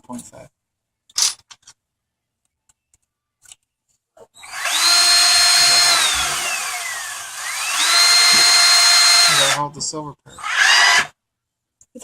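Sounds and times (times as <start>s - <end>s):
electric screwdriver whine: 4.4s - 9.6s, 10.4s - 11.1s.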